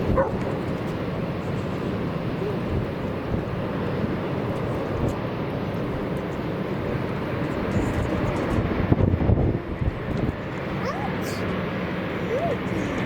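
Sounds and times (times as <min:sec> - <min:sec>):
aircraft engine rumble: 0:00.0 - 0:13.0
wind on microphone: 0:00.0 - 0:13.0.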